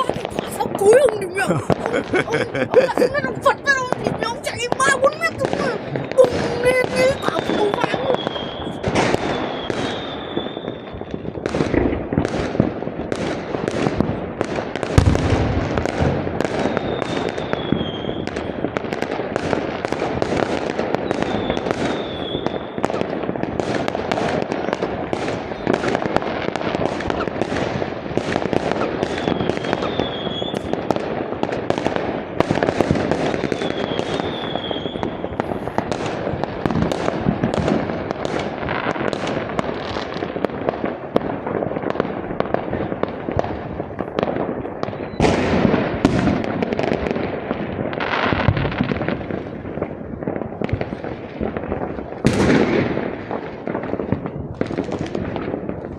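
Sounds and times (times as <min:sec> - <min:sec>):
fireworks bangs and crackle: 0:00.0 - 0:55.9
high firework whistles: 0:06.8 - 0:11.0, 0:16.5 - 0:18.5, 0:21.0 - 0:23.1, 0:28.3 - 0:30.8, 0:33.1 - 0:36.1
low firework boom: 0:15.0 - 0:17.0.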